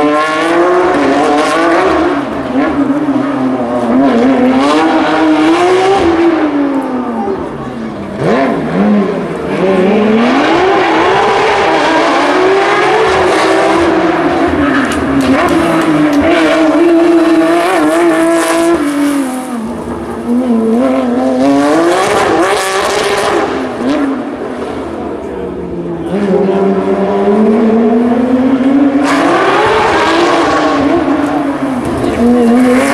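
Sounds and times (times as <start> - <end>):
racing engine at full throttle: 0.0 - 32.9.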